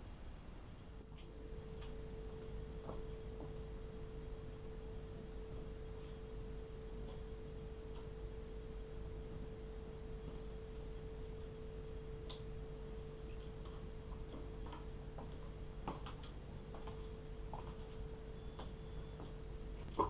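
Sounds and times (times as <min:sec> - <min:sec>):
steady hum: 0:00.0 - 0:20.0
faint irregular clicks and taps: 0:13.3 - 0:20.0.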